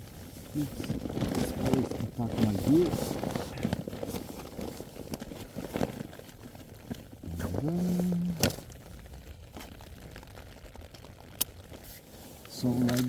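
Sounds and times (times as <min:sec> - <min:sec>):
fabric rustling: 0:00.0 - 0:13.0
low moaning tone: 0:07.2 - 0:08.7.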